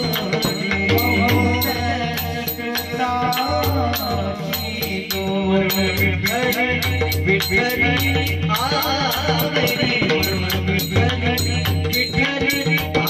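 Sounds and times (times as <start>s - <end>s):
pakhawaj drum beat: 0.0s - 13.0s.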